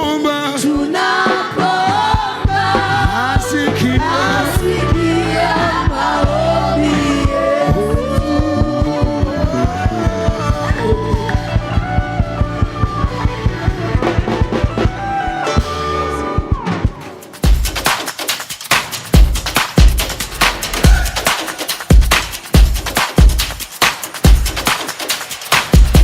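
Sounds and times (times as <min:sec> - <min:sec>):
people singing: 0:00.0 - 0:13.9
steady drum beat: 0:00.8 - 0:26.0
bass: 0:02.4 - 0:16.9.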